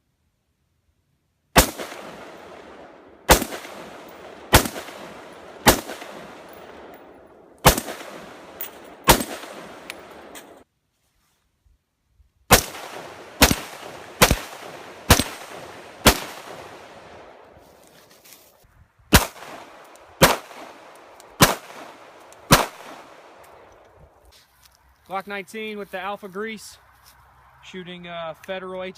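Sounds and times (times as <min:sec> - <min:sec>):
gunshots: 0:01.6 - 0:10.6, 0:12.5 - 0:17.5, 0:19.1 - 0:23.4.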